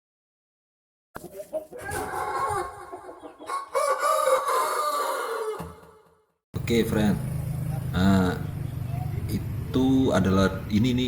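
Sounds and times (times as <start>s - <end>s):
rooster crowing: 1.8s - 6.1s.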